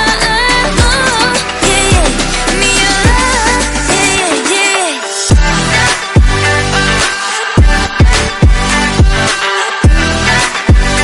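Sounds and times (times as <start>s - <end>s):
pop music with steady beat: 0.0s - 11.0s
falling electronic bass drum: 5.3s - 5.6s, 6.2s - 6.4s, 7.6s - 9.3s.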